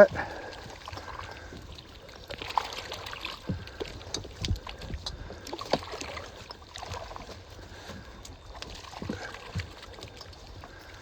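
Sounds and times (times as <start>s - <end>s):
knocks and thumps against boat: 0.0s - 11.0s
water splashing and dripping: 0.0s - 11.0s.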